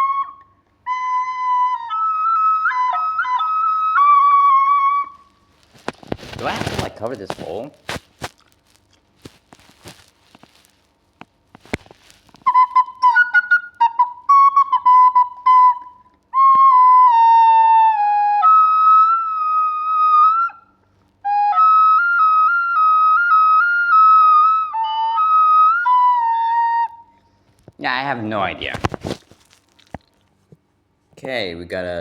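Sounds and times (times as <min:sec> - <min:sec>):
flute notes played by beginner: 0:00.0 - 0:05.5, 0:12.0 - 0:27.3.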